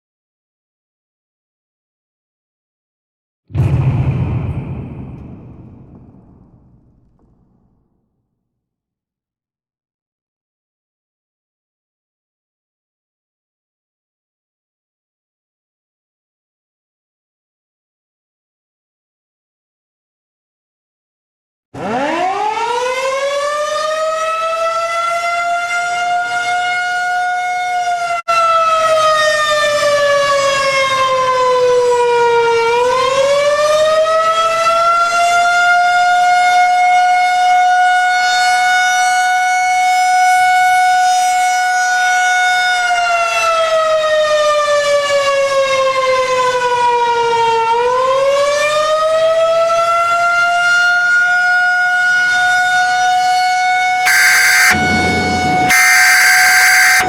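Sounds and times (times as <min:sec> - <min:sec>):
warning siren wailing: 0:21.8 - 0:35.0, 0:50.2 - 0:57.0.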